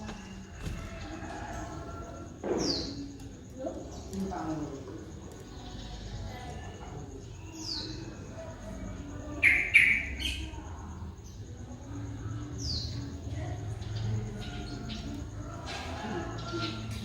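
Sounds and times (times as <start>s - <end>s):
sharp bird chirps: 9.4s - 10.6s.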